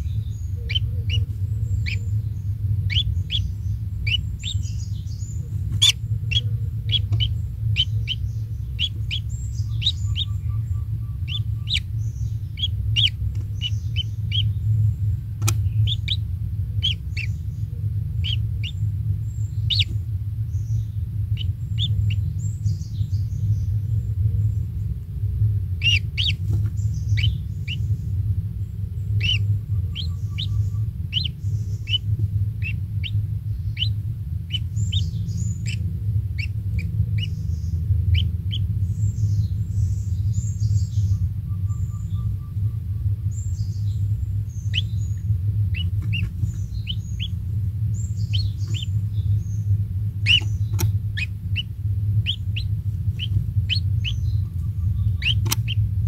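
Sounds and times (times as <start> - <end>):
bird chirping: 0.0 - 25.0, 25.7 - 56.0
steady low rumble: 0.0 - 56.0.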